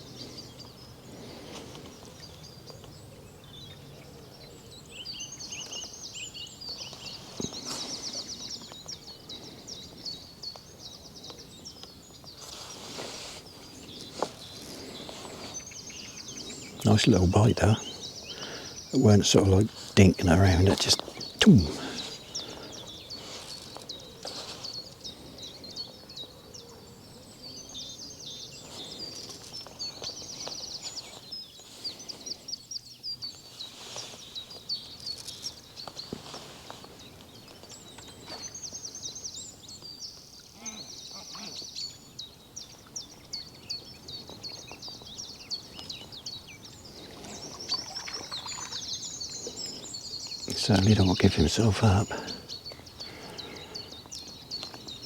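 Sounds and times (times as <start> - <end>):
small birds chirping: 0.0 - 55.0
faint background hiss: 12.3 - 24.8.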